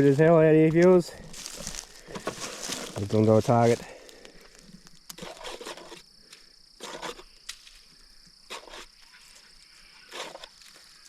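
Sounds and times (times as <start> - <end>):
short scraping noises: 5.2 - 6.0, 6.8 - 7.3, 10.0 - 10.6.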